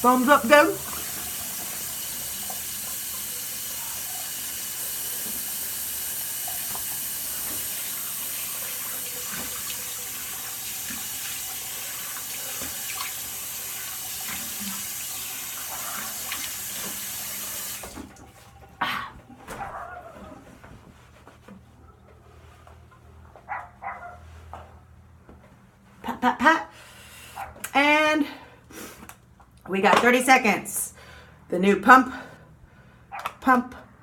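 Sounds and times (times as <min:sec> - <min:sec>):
water running from sink tap: 0:00.0 - 0:18.7.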